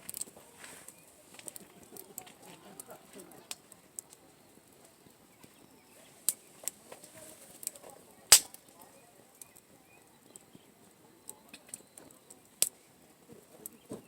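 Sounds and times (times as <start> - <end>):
campfire crackling: 0.0 - 14.0.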